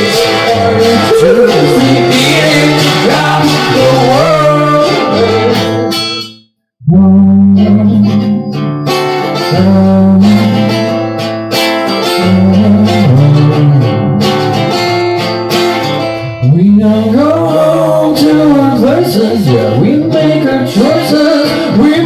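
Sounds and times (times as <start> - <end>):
guitar strumming chords: 0.0 - 22.0.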